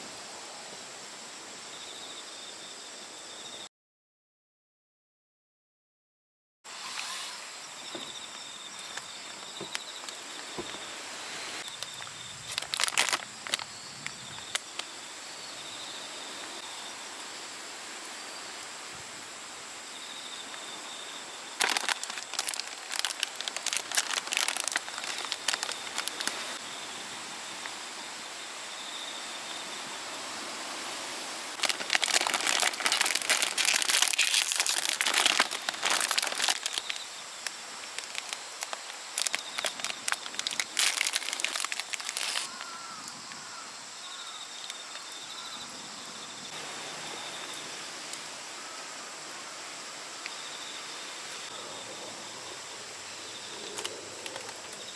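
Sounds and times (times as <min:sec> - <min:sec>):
plastic wrapper crinkling: 0:11.6 - 0:13.8, 0:21.6 - 0:26.6, 0:31.5 - 0:42.7.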